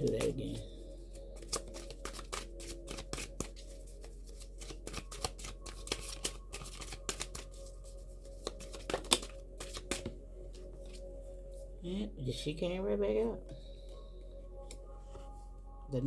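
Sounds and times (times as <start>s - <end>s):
cards being shuffled: 0.0s - 10.2s.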